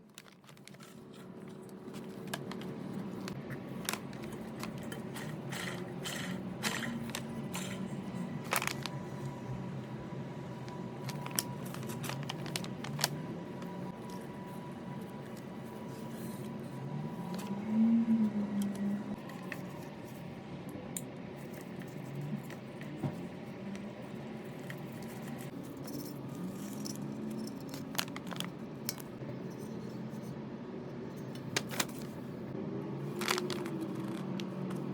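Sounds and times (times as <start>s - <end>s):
steady low hum: 0.0s - 34.9s
metal parts and tools clinking: 3.8s - 7.8s, 24.6s - 30.2s.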